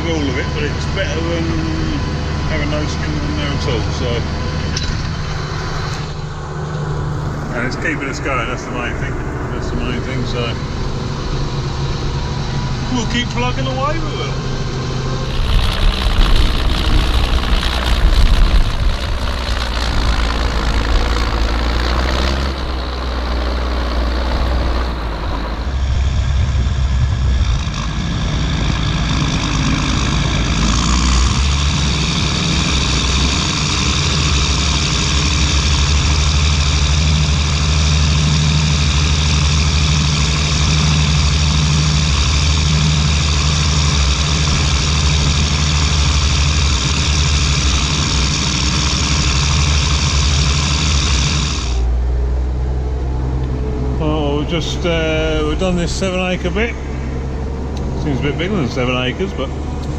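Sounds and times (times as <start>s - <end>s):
tractor diesel engine under load: 7.3s - 26.0s.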